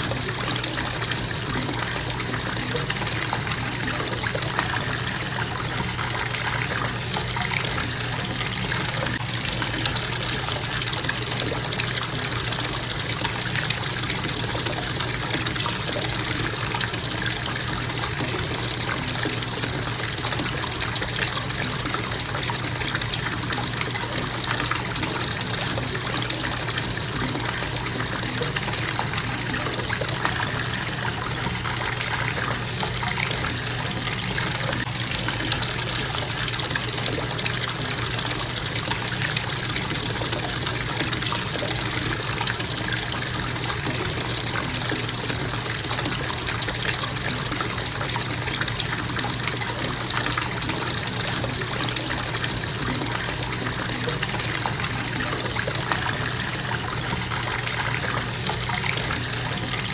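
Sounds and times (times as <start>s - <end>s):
water pouring into a bathtub: 0.0s - 59.9s.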